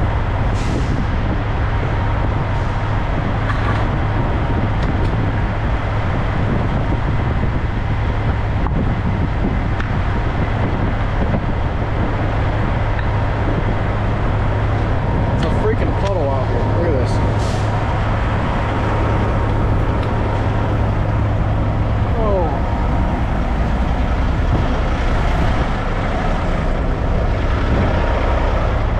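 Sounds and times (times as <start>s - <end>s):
diesel truck engine drone: 0.0s - 28.9s
road and tyre noise: 0.0s - 28.9s.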